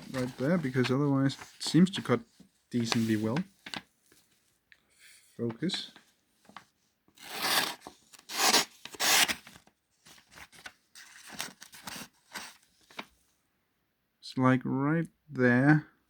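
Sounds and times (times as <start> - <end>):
knife slicing paper: 7.2 - 9.5.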